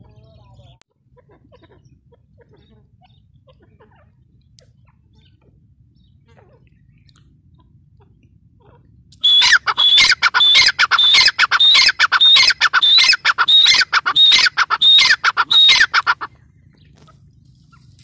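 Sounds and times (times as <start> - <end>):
francolin calling shrilly: 9.2 - 16.3.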